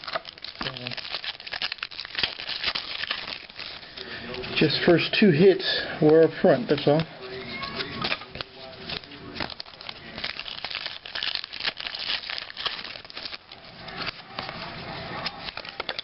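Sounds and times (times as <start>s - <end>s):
wrapper crinkling and tearing: 0.0s - 4.0s, 8.0s - 14.6s, 15.2s - 16.0s
cards being handled: 0.0s - 4.5s, 7.7s - 16.0s.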